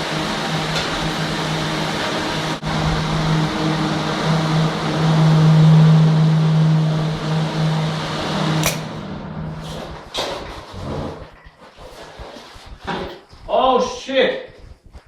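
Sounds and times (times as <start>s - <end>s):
sharp switch click: 8.6s - 8.9s.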